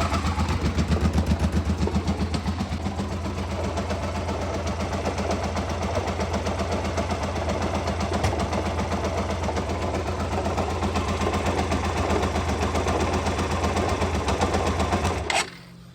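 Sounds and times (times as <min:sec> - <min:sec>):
motorcycle engine idling: 0:00.0 - 0:15.9
galloping grinding noise: 0:15.0 - 0:15.8.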